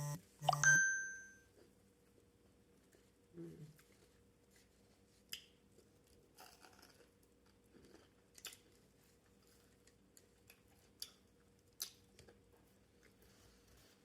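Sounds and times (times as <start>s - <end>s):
chewing: 5.3s - 13.3s.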